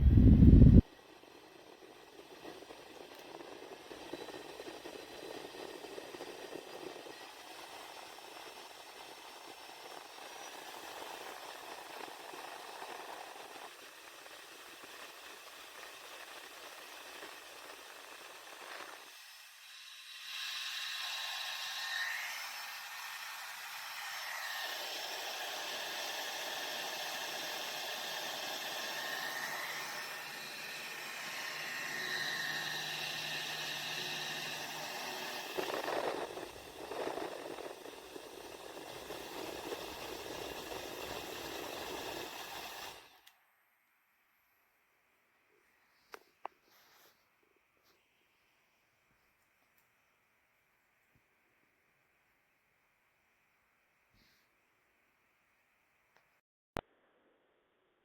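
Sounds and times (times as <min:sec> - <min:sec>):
small fan running: 0:00.0 - 0:43.6.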